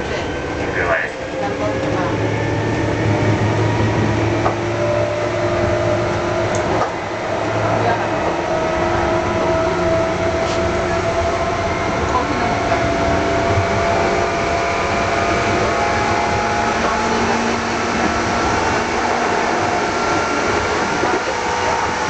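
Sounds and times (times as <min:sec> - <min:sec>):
train motor and gear whine: 0:00.0 - 0:22.0
wheels rumbling on rail: 0:00.0 - 0:22.0.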